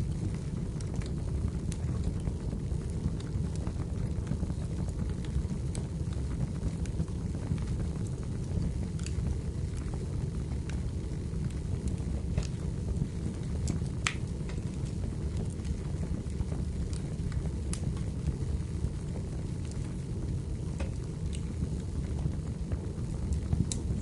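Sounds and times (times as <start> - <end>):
wood fire crackling: 0.0 - 24.0.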